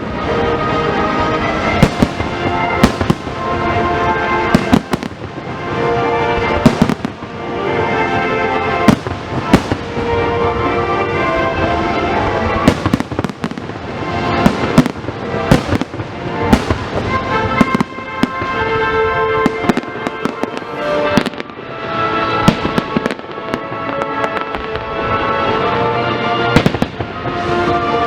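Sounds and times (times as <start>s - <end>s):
fireworks bangs and crackles: 0.0s - 28.0s
music with sustained notes: 0.0s - 28.0s.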